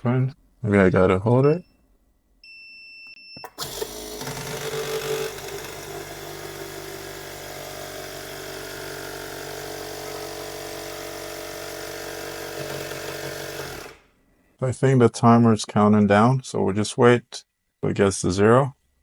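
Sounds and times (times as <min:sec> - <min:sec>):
air compressor whirring: 0:03.4 - 0:14.2.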